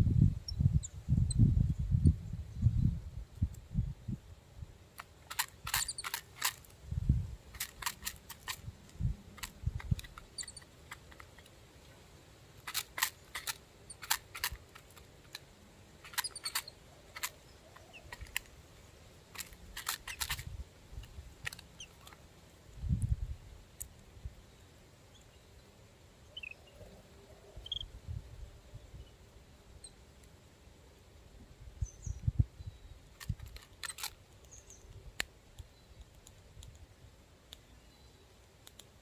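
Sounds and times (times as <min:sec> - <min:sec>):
faint high bird chirps: 0:00.3 - 0:03.0, 0:10.1 - 0:10.7, 0:16.0 - 0:18.4, 0:24.4 - 0:28.0, 0:31.8 - 0:33.2, 0:37.6 - 0:38.4
birds pecking taps and clicks: 0:05.0 - 0:06.7, 0:12.6 - 0:18.6, 0:19.3 - 0:20.4.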